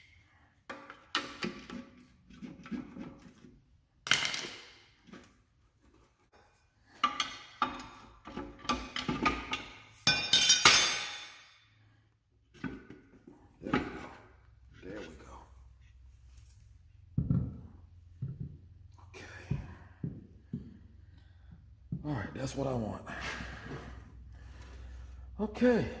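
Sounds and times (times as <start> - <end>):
metal tools clanking and scraping: 6.9 - 11.6.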